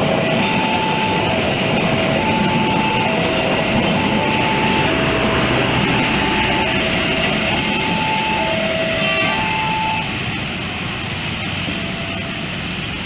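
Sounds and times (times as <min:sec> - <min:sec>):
level crossing alarm: 0:00.0 - 0:13.0
train passing: 0:00.0 - 0:13.0.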